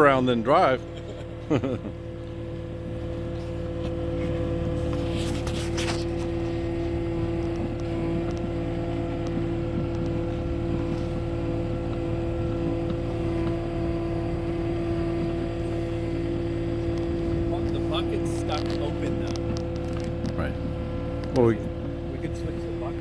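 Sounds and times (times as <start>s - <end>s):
loader engine drone with whine: 0.0s - 23.0s.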